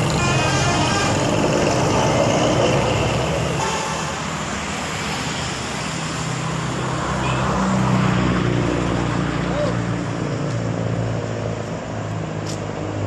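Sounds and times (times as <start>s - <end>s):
bus engine running: 0.0s - 5.8s
road traffic passing: 0.0s - 13.0s.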